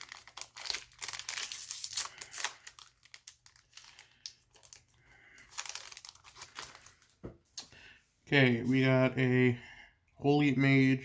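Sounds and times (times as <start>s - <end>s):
foil wrapper crinkling: 0.0s - 7.2s.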